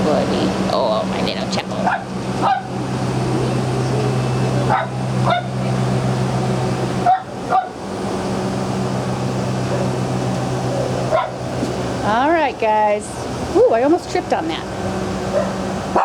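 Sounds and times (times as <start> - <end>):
steady low hum: 0.0 - 16.0
small dogs barking: 1.8 - 2.9, 4.6 - 5.8, 7.0 - 7.8, 10.8 - 11.5, 15.3 - 16.0.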